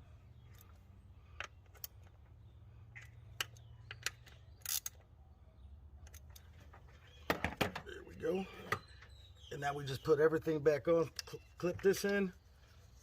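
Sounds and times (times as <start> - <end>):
metal clicks of hand tools: 3.0 - 5.0.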